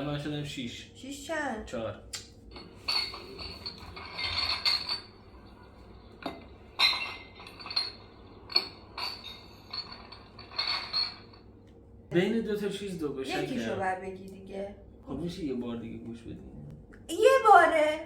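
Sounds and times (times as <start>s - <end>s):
glass clinking and jangling: 2.5s - 11.7s.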